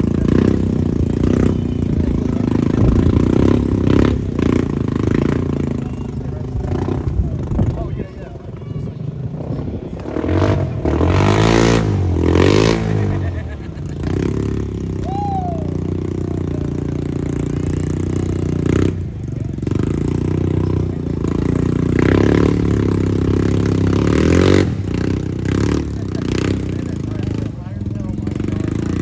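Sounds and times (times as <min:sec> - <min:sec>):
vehicle engine revving: 0:00.0 - 0:29.0.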